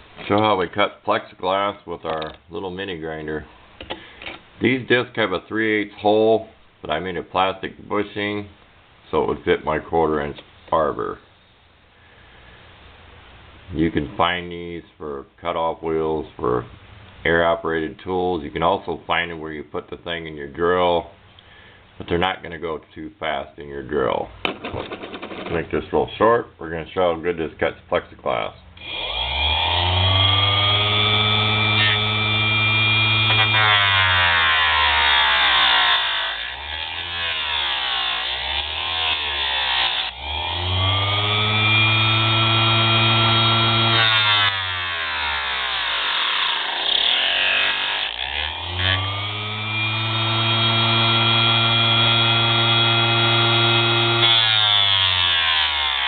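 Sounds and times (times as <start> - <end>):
mini grinder whining: 28.8 - 56.0.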